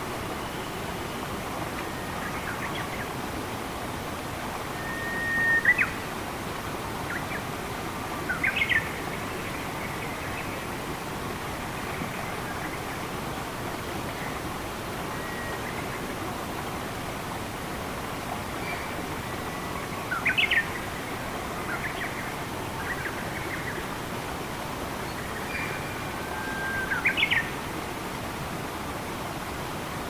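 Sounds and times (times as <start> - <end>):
flowing water rushing: 0.0 - 30.0.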